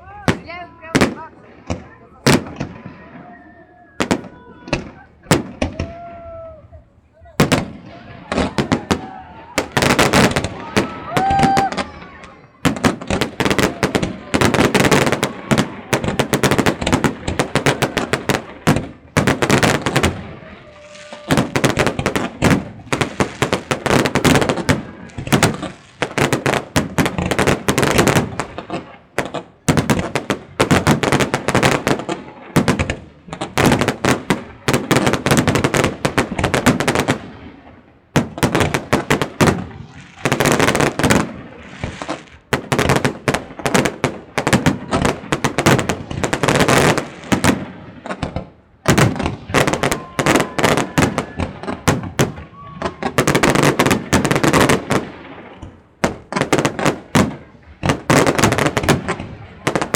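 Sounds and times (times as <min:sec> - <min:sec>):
fireworks bangs and crackling bursts: 0:00.0 - 0:59.9.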